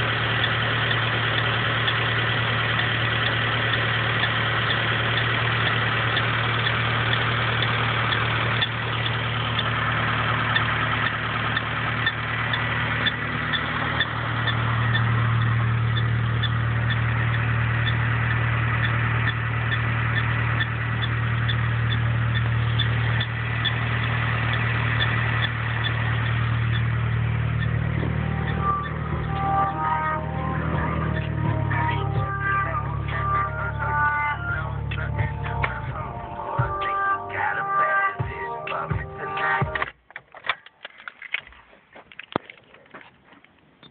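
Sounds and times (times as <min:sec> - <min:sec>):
engine idling: 0:00.0 - 0:43.9
short high belt squeak: 0:18.8 - 0:33.2.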